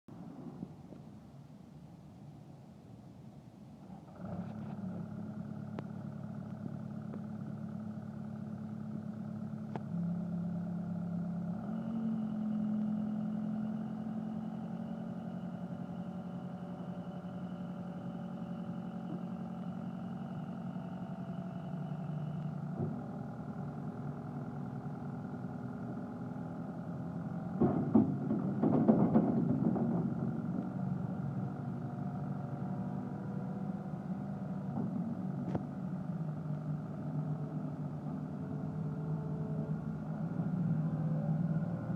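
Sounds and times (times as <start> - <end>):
diesel engine running: 0.1 - 41.9
sharp knocks and clatter: 27.5 - 30.8.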